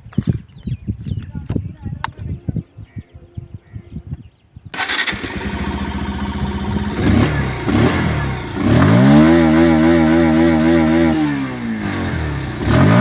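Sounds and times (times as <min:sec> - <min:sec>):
motorcycle engine starting and revving: 0:04.7 - 0:13.0.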